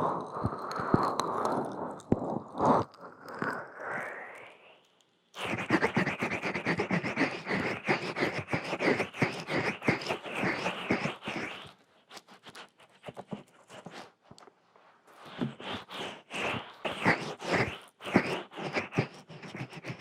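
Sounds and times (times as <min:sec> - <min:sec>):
hands rubbing microphone: 0:05.4 - 0:14.5, 0:15.1 - 0:20.0.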